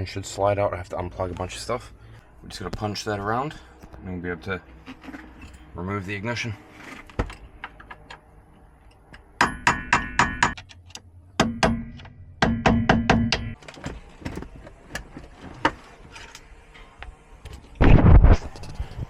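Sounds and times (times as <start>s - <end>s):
hammer striking metal punch: 9.4s - 10.6s, 11.4s - 13.6s.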